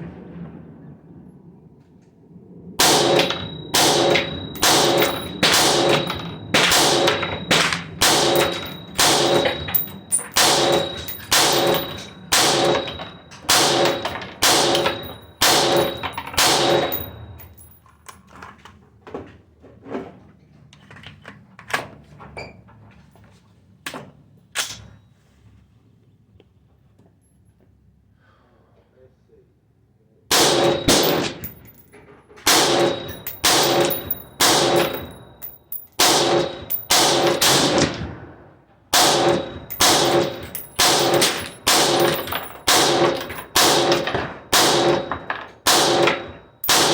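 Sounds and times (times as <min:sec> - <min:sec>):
rifle firing rapid shots: 0:02.8 - 0:17.2, 0:30.3 - 0:31.6, 0:32.5 - 0:35.2, 0:36.0 - 0:38.1, 0:39.0 - 0:46.9.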